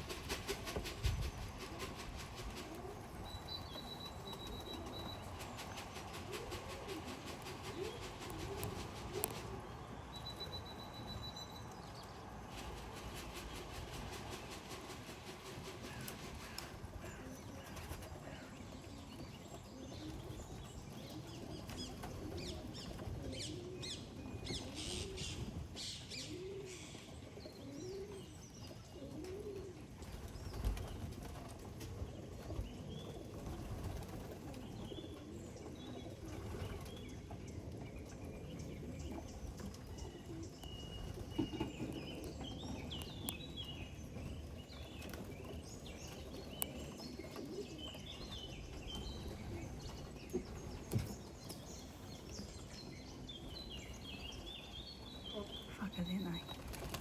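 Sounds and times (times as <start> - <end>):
wing flaps: 0.0 - 9.7, 56.5 - 57.0
pigeons cooing: 0.0 - 10.6, 11.9 - 57.0
small birds chirping: 0.8 - 14.8, 32.0 - 57.0.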